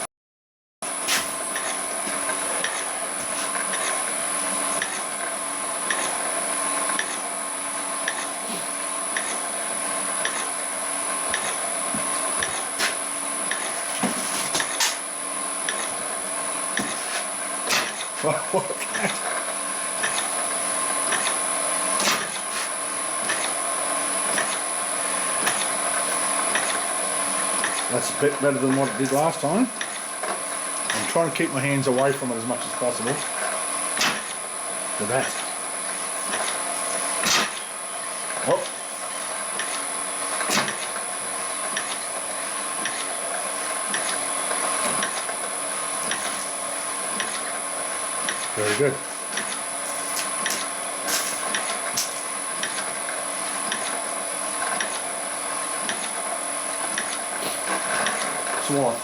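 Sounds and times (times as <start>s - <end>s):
crusher machine motor whirring: 0.9s - 59.0s.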